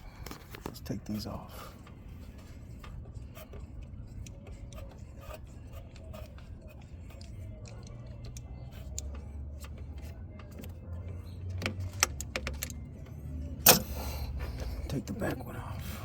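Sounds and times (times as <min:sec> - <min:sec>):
small clicks and taps of tools: 0:06.2 - 0:14.2.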